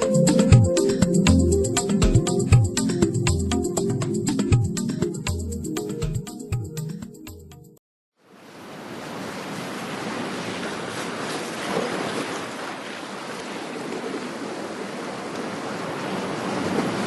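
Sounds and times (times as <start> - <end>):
ocean waves breaking: 8.3 - 17.0.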